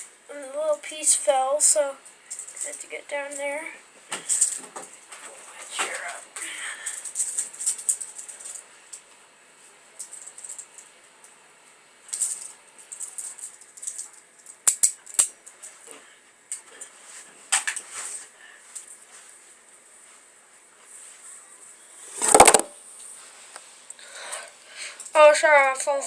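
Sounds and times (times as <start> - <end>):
toy handcuffs rattling: 6.8 - 8.6, 12.1 - 15.4
sharp knocks: 22.2 - 22.7.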